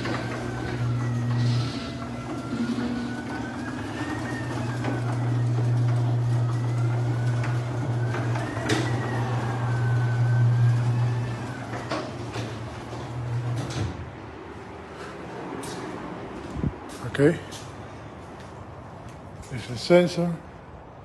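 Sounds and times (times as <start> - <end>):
garage door opener motor whining: 0.0 - 14.6.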